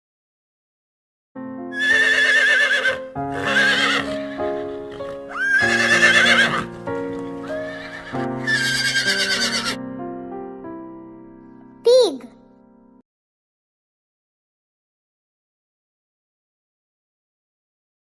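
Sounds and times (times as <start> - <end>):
background music: 1.4 - 13.0
horse whinnying: 1.7 - 9.8.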